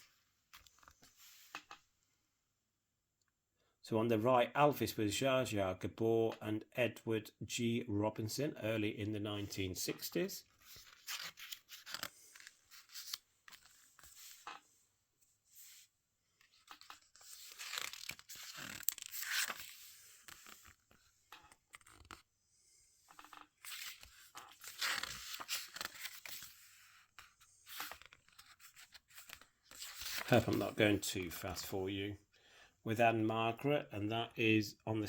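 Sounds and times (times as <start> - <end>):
paper booklet pages rustling: 9.8 - 14.8, 15.5 - 22.3, 23.0 - 31.8.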